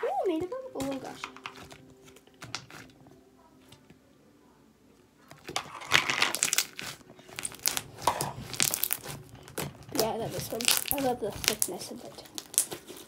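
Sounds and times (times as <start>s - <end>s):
slime crackling and popping: 0.3s - 3.0s, 5.2s - 13.0s.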